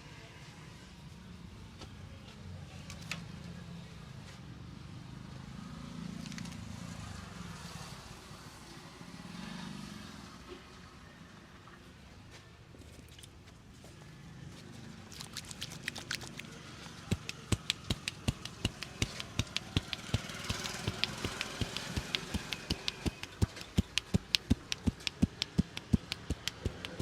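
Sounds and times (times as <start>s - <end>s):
hands slapping a head: 17.0s - 27.0s.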